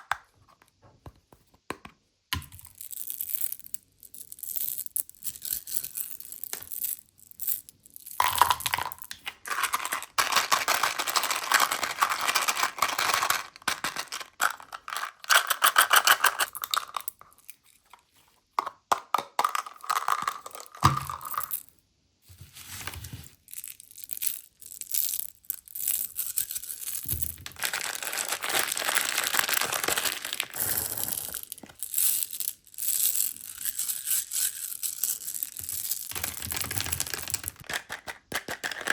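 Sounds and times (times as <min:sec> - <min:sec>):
hard candies clattering: 0:02.6 - 0:17.6, 0:18.6 - 0:21.7, 0:23.6 - 0:38.9
plastic wrappers crinkling and tearing: 0:09.4 - 0:17.0, 0:27.4 - 0:31.8, 0:35.8 - 0:38.0.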